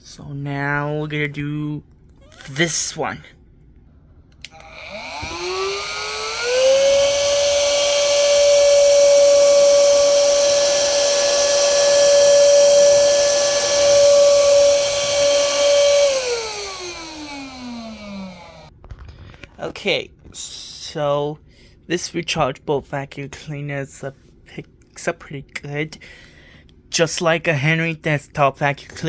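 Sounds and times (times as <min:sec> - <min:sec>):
small vacuum motor whining: 0:04.5 - 0:18.7.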